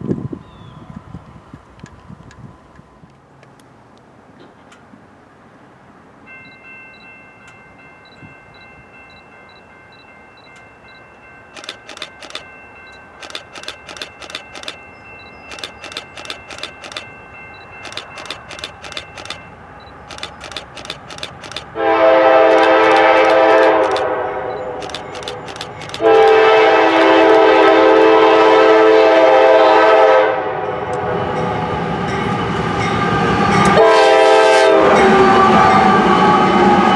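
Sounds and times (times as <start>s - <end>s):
crossing bell ringing: 6.2s - 28.2s
train wheels clicking over rail joints: 11.5s - 28.2s
locomotive air horn blast: 21.7s - 24.8s, 26.0s - 31.3s, 33.7s - 36.9s.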